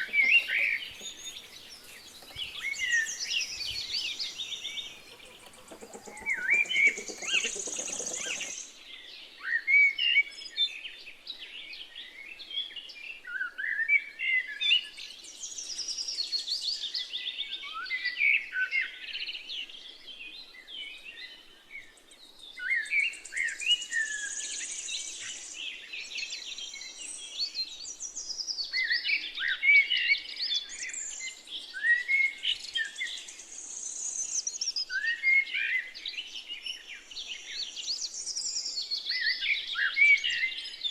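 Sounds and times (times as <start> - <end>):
small birds chirping: 0.0 - 8.8.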